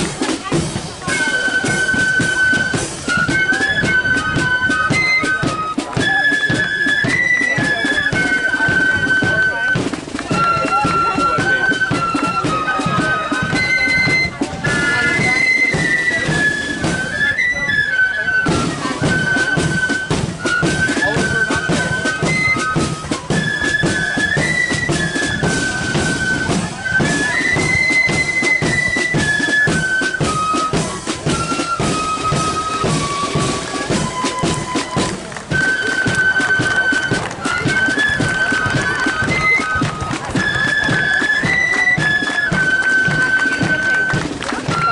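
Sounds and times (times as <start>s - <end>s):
flute band playing in unison: 0.0s - 44.9s
side drum beats: 0.0s - 44.9s.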